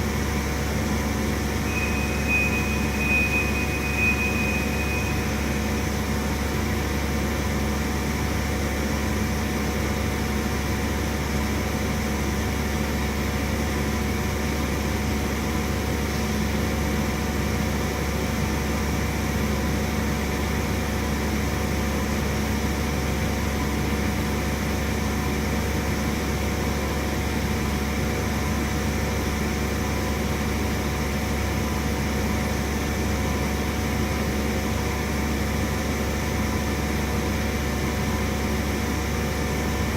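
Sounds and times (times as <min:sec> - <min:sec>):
milling machine humming: 0:01.4 - 0:06.6.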